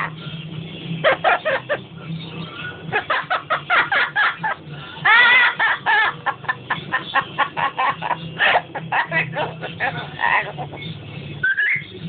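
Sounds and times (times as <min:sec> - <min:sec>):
parrot laughing: 0:01.0 - 0:01.9, 0:02.7 - 0:11.9
parrot squawk: 0:11.4 - 0:11.9.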